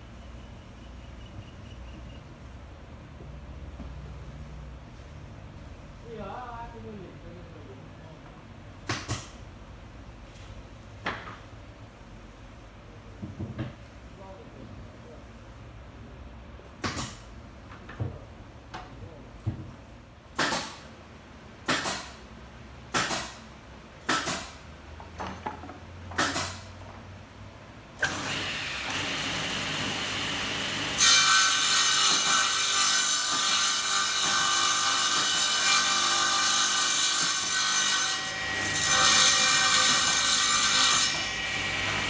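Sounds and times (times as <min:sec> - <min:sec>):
table saw cutting wood: 0:28.0 - 0:42.0.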